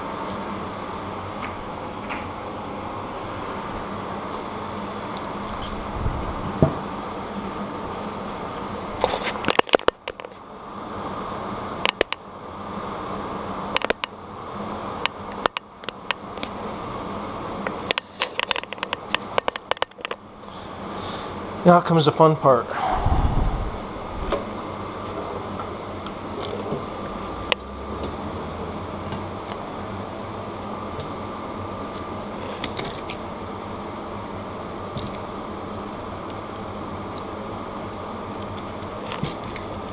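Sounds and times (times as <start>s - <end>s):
mechanical hum: 0.0s - 39.9s
metal parts clicking and clinking: 32.4s - 33.2s.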